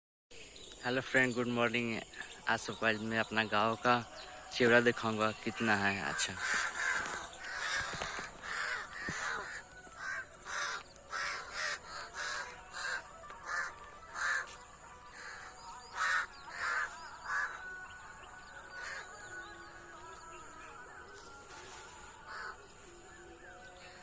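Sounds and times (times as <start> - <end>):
crows cawing: 5.6 - 19.5, 22.0 - 22.8.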